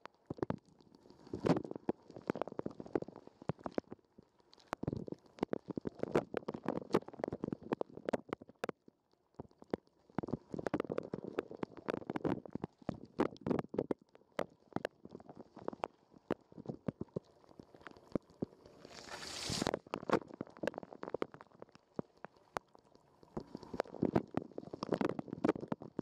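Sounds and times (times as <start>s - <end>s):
water spray splashing on housing: 18.9s - 19.7s.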